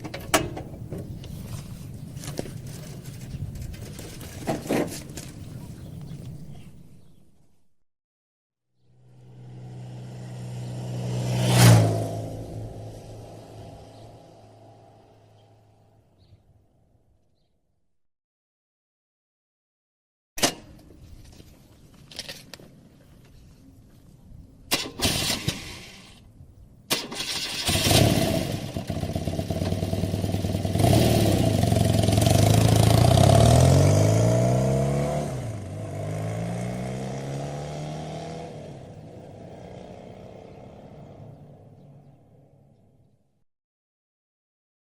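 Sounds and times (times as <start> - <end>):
motorcycle engine running: 28.0 - 33.9.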